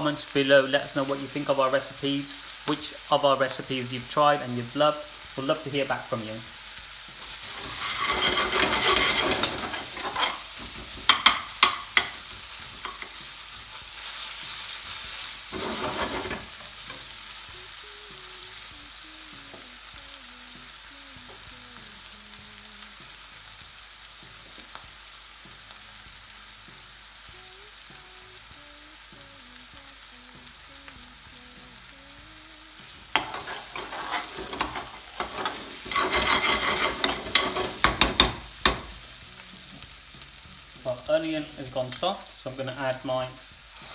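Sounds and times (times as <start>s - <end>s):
onions sizzling in a pan: 0.0s - 43.9s
stirring and scraping in a pan: 6.7s - 17.3s, 32.9s - 41.0s, 43.6s - 43.9s.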